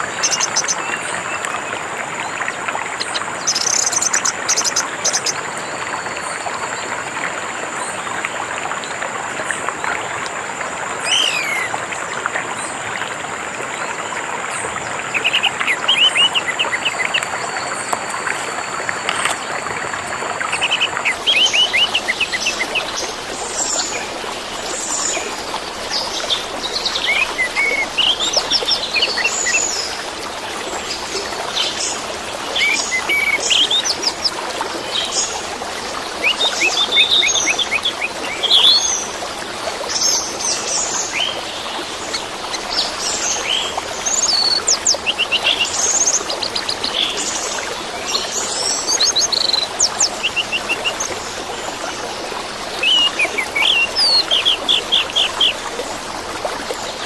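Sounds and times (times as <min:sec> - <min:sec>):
water trickling: 0:00.0 - 0:57.0
thrush singing: 0:52.7 - 0:55.6.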